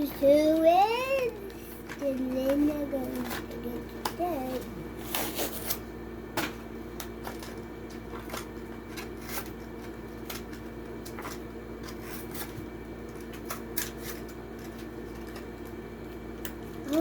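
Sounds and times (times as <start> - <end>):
steady low hum: 0.0 - 17.0
plastic packaging tearing: 5.0 - 5.8.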